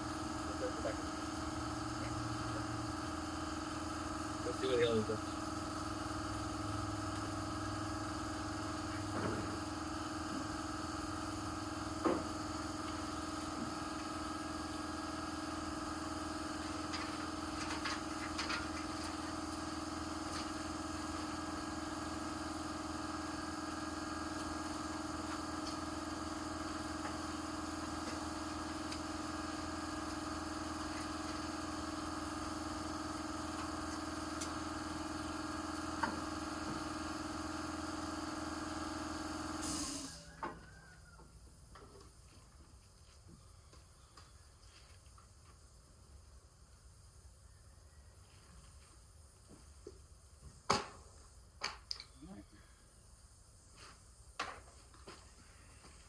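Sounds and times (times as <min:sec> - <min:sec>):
steady machine hum: 0:00.0 - 0:40.0.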